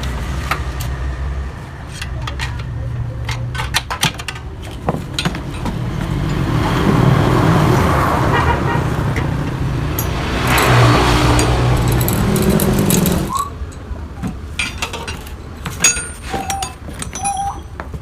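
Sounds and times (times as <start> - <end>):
vehicle engine running: 4.3 - 13.3
sharp metallic clinks: 9.9 - 13.8, 14.6 - 17.8.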